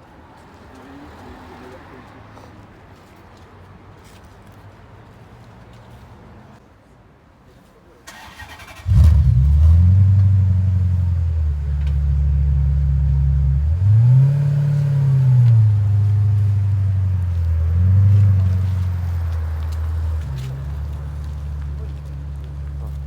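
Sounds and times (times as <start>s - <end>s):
car engine starting and idling: 8.1s - 23.0s.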